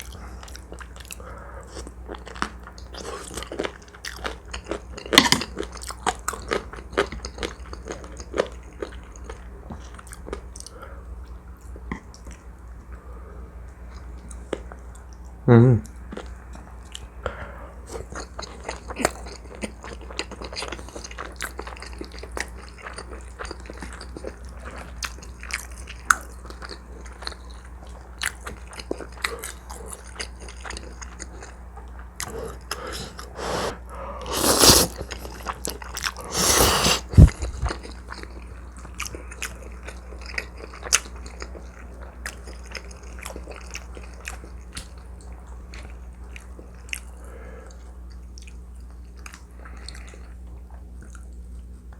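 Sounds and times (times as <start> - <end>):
person chewing and biting: 32.1 - 38.3.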